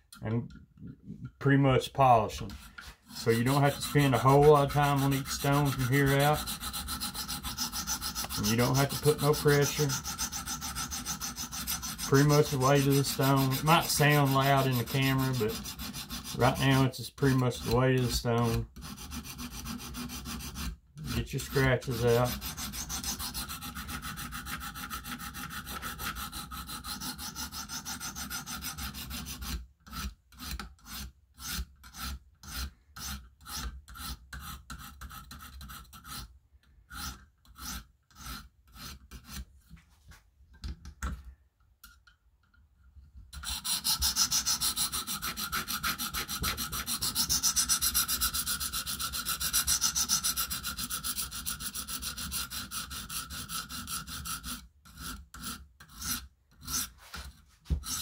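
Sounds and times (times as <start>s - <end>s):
sharpening stone scraping knife edge: 2.5s - 16.6s, 43.4s - 56.9s.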